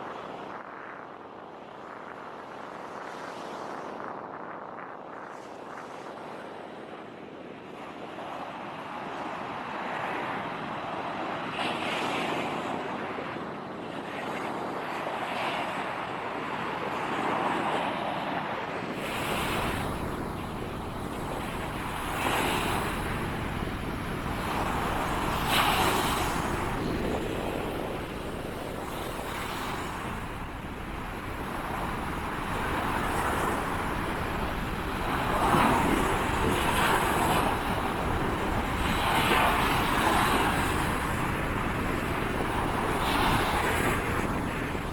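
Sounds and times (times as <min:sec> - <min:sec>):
waves breaking on beach: 0:07.8 - 0:44.9
wind buffeting microphone: 0:10.1 - 0:44.9.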